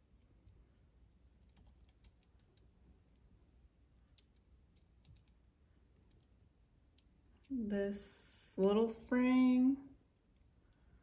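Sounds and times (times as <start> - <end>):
small metal parts clicking: 1.4 - 3.3, 3.9 - 7.5.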